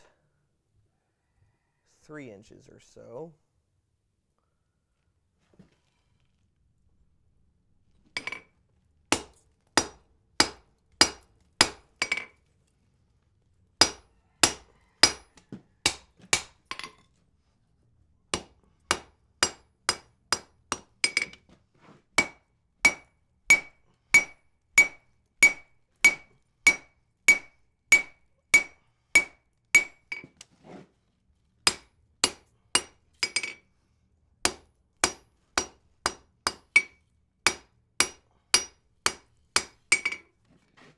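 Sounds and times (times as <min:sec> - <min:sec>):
hammer striking iron on anvil: 0:09.1 - 0:12.3, 0:13.8 - 0:15.3, 0:15.9 - 0:16.9, 0:18.4 - 0:21.4, 0:22.2 - 0:30.2, 0:31.7 - 0:33.6, 0:34.5 - 0:40.2.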